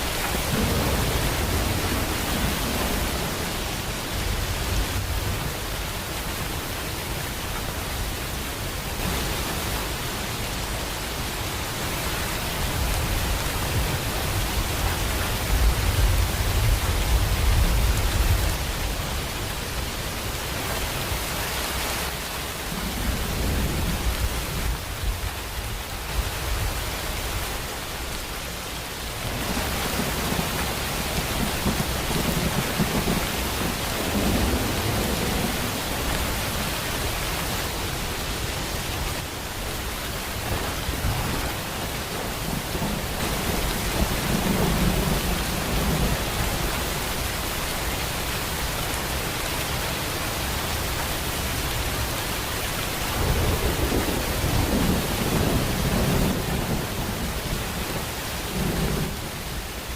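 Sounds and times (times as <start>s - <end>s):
thunder rumbling: 0.0s - 6.6s, 29.1s - 47.6s, 52.9s - 59.7s
heavy rain: 0.0s - 59.9s.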